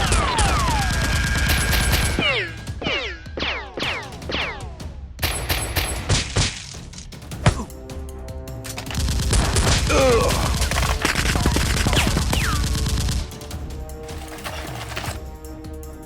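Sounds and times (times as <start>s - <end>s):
automatic gunfire: 0.0s - 2.2s, 8.9s - 13.3s
background music: 0.0s - 16.0s.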